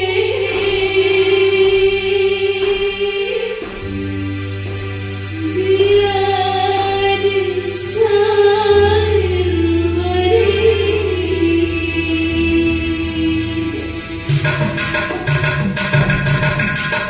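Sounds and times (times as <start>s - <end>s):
woman singing: 0.0s - 4.0s, 5.3s - 14.1s
low steady accompaniment: 0.0s - 17.0s.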